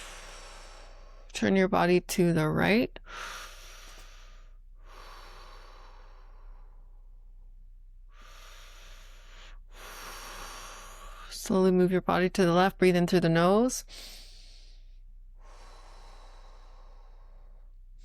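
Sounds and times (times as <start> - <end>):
person breathing deeply: 0.0 - 1.3, 3.0 - 7.3, 8.1 - 11.3, 13.8 - 18.0.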